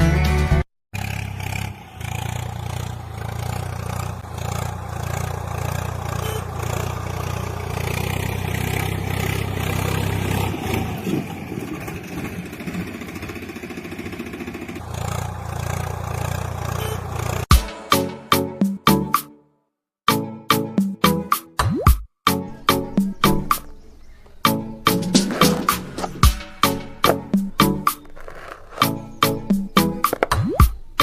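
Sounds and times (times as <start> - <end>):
diesel engine droning: 1.0 - 17.5, 22.5 - 31.0.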